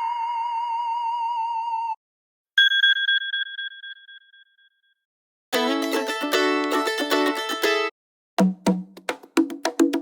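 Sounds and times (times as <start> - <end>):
high fluttering ringing tone: 2.6 - 5.0.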